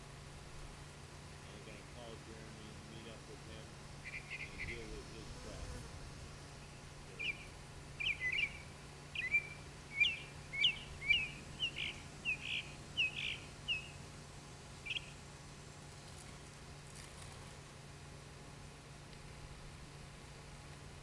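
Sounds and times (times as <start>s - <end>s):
faint steady hum: 0.0s - 21.0s
songbird chirping: 3.9s - 15.3s.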